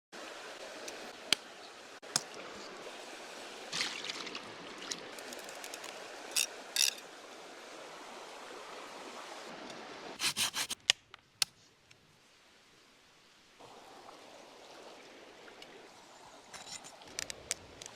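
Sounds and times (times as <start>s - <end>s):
running water rushing: 0.2s - 10.8s
short scrapes and clicks: 10.2s - 10.8s.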